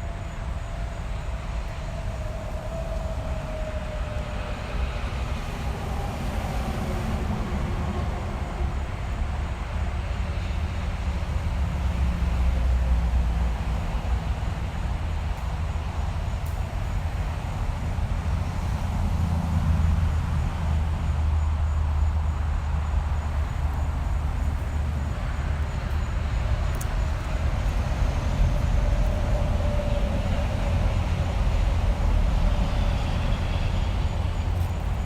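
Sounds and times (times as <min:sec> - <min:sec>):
traffic rumble: 0:00.0 - 0:35.0
faint whining tone: 0:18.5 - 0:35.0.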